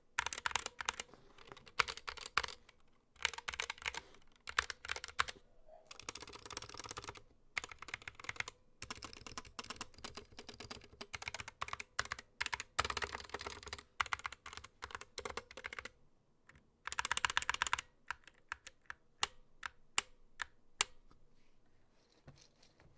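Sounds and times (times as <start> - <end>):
mechanical keyboard typing: 0.2 - 16.0, 16.9 - 21.0.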